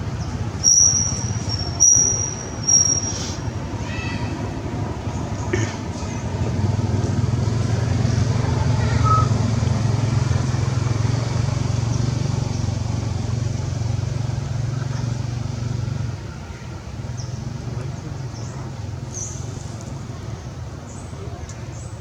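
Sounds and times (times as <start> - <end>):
vehicle engine humming: 0.0 - 22.0.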